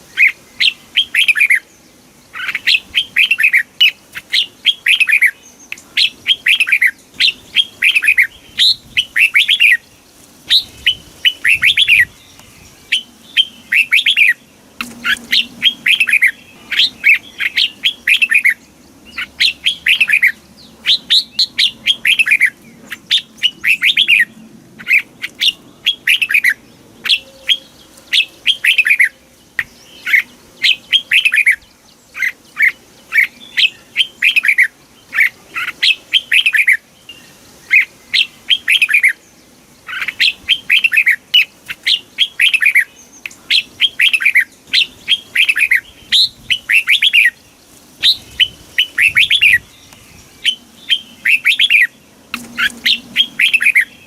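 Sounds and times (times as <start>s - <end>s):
bird singing whistled phrases: 19.2s - 29.2s, 50.4s - 51.9s, 52.9s - 54.0s.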